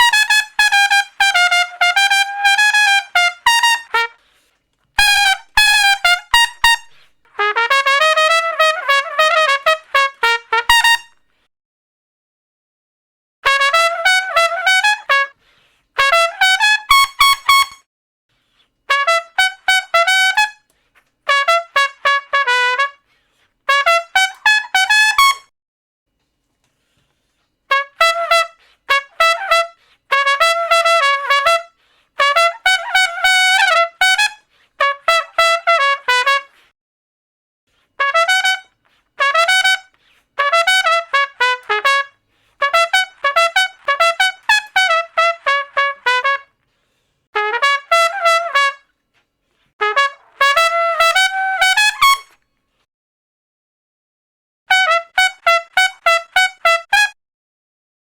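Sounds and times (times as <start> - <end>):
solo trumpet playing: 0.0 - 4.4, 5.0 - 11.2, 13.4 - 15.4, 16.0 - 17.9, 18.9 - 20.7, 21.3 - 23.1, 23.7 - 25.5, 27.7 - 36.6, 38.0 - 46.6, 47.4 - 48.9, 49.8 - 52.4, 54.7 - 57.2.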